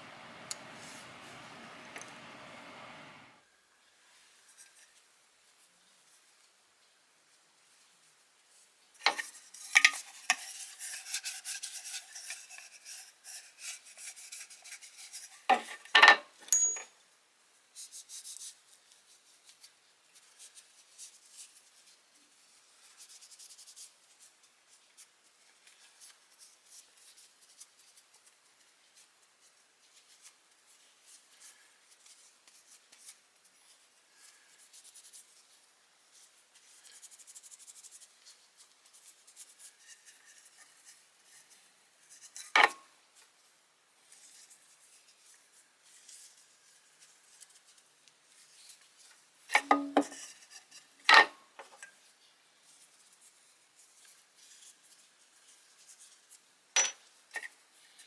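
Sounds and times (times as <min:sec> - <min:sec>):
faint steady tone: 0:00.0 - 0:03.4.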